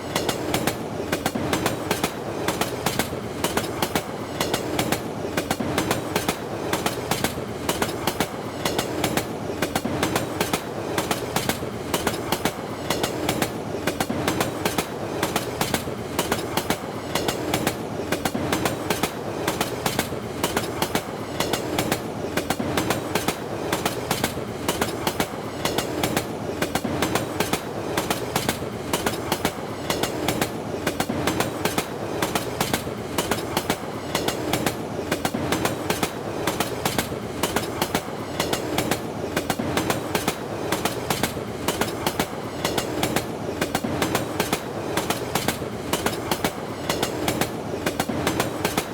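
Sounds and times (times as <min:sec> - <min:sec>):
passenger train rumble: 0:00.0 - 0:48.9
wheels clicking over rail joints: 0:00.0 - 0:48.9.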